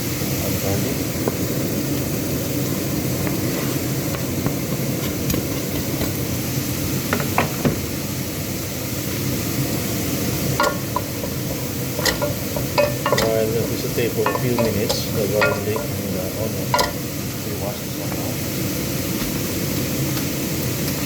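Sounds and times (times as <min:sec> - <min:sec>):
onion sizzling in hot oil: 0:00.0 - 0:21.0
utensil clinking against pan: 0:10.6 - 0:16.0, 0:16.7 - 0:17.1.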